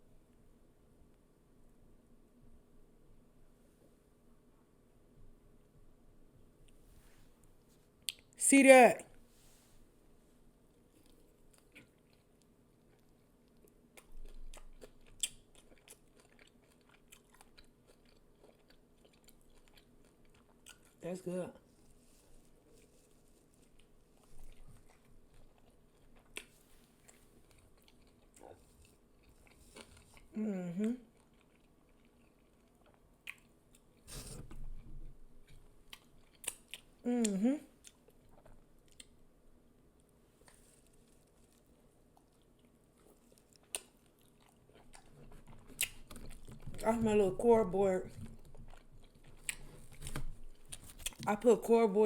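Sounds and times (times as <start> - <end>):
chewing and biting chicken: 10.8 - 21.0, 22.2 - 30.3, 31.0 - 34.8, 40.4 - 46.8, 48.1 - 51.2.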